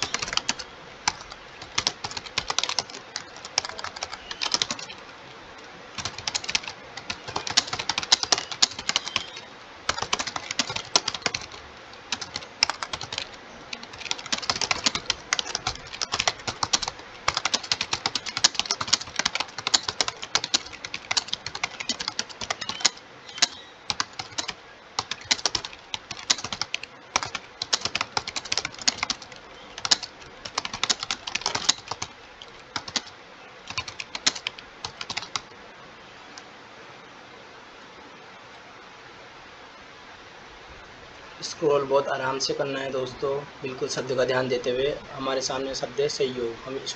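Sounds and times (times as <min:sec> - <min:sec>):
fast typing on keyboard: 0:00.0 - 0:05.0, 0:05.9 - 0:35.5.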